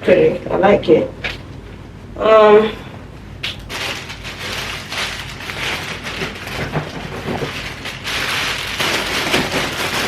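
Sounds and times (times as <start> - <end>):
rustling and crinkling handling noise: 3.2 - 10.0.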